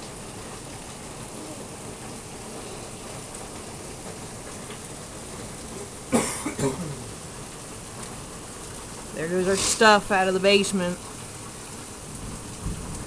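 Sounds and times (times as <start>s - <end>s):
rain falling: 0.0s - 13.0s
person coughing: 6.1s - 7.1s.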